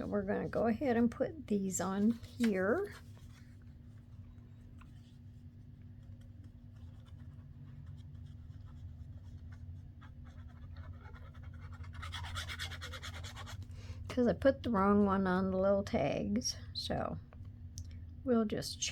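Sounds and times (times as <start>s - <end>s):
steady low hum: 0.0s - 18.9s
faint scratching and taps: 1.8s - 11.6s
paper being rubbed: 6.6s - 13.6s.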